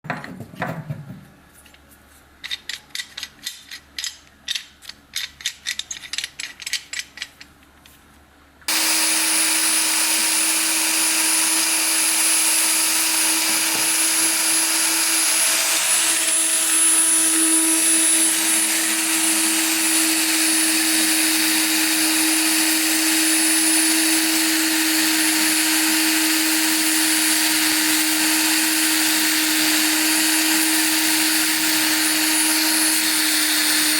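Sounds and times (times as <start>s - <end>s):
power tool motor whining: 8.7s - 33.9s.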